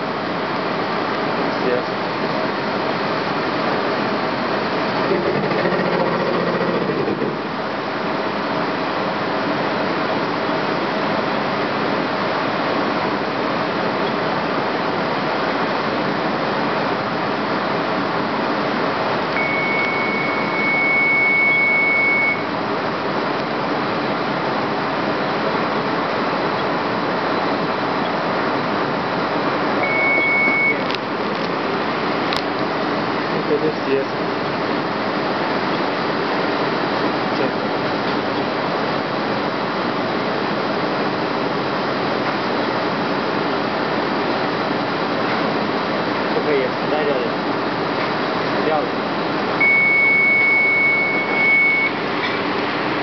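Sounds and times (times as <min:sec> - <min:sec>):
machine axis running noise: 0:04.5 - 0:07.8
high steady tone: 0:19.3 - 0:22.5, 0:29.8 - 0:31.0, 0:49.6 - 0:52.1.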